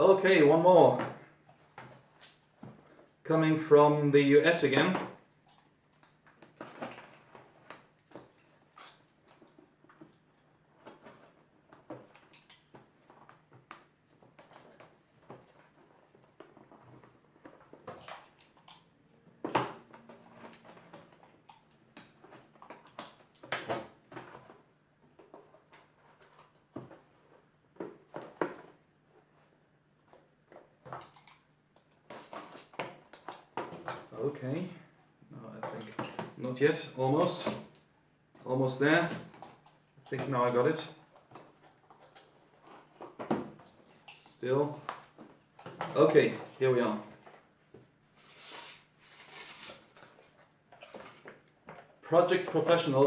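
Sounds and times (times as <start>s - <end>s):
packaging scraping and rustling: 48.0s - 51.5s.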